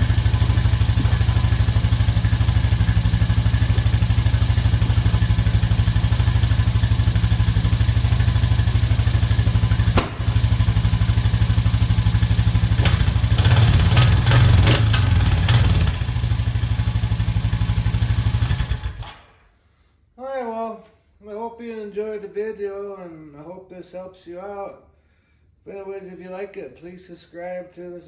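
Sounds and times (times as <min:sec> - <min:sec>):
atv engine idling: 0:00.0 - 0:19.4.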